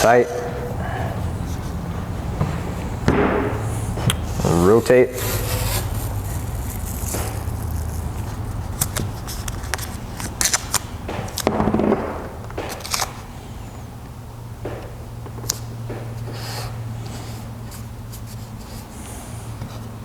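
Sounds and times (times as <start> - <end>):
wooden leg scraping on bench: 0.0 - 10.9
rustling burst: 0.0 - 13.6
steady low hum: 0.0 - 20.0
masking tape pulled tight: 5.2 - 11.5.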